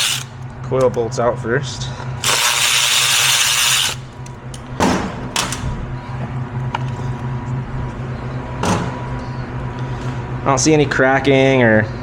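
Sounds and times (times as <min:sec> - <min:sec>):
cordless power tool spinning: 0:00.0 - 0:00.3, 0:02.2 - 0:04.0.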